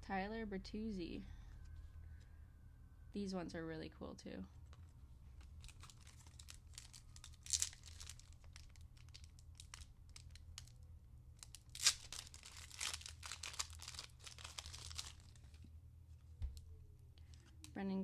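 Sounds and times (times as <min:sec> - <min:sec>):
wrapper crinkling: 0:04.7 - 0:10.8, 0:11.4 - 0:15.7
wrapper tearing: 0:05.4 - 0:10.8, 0:11.4 - 0:15.6.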